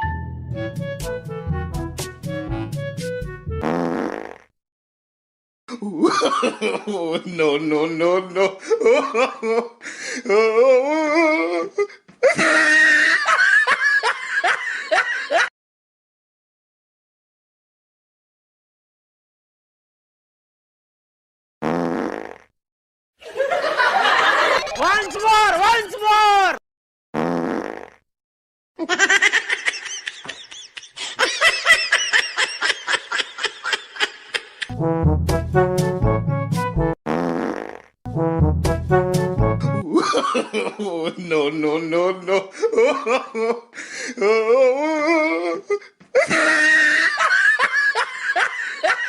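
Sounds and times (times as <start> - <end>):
person laughing: 5.7 - 15.5, 23.3 - 25.4, 28.8 - 34.7, 39.8 - 49.0.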